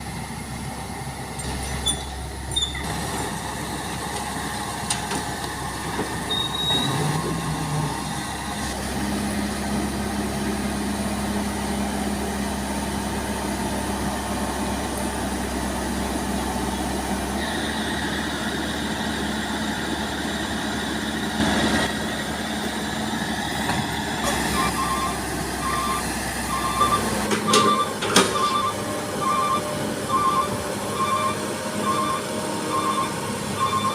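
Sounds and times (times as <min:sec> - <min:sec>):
excavator diesel engine running: 0:00.0 - 0:33.9
backup alarm beeping: 0:24.5 - 0:33.9.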